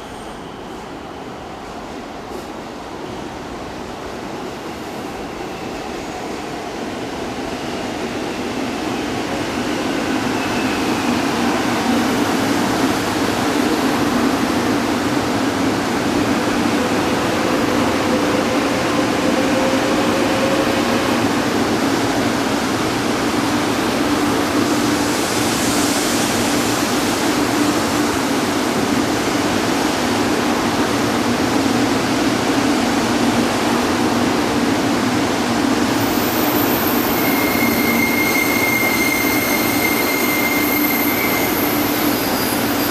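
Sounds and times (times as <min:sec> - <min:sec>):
train rushing with low hum: 0:00.0 - 0:42.9.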